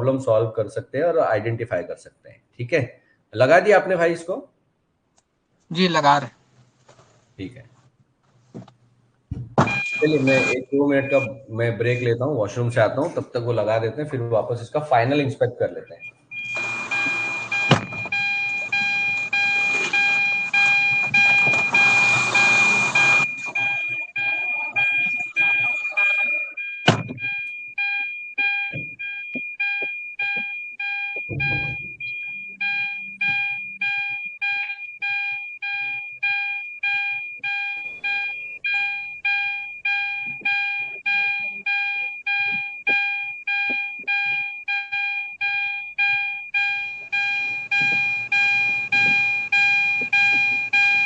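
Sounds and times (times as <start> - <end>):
electronic alarm beeping: 9.6 - 11.5, 15.8 - 51.0
steady high tone: 21.4 - 27.6
low thud: 31.2 - 32.0.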